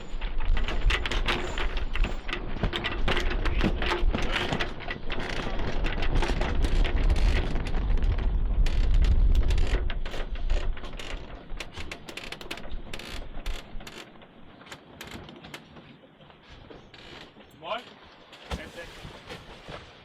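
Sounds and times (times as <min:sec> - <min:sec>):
wind buffeting microphone: 0:05.5 - 0:10.9
winch ratcheting clicks: 0:08.6 - 0:15.7.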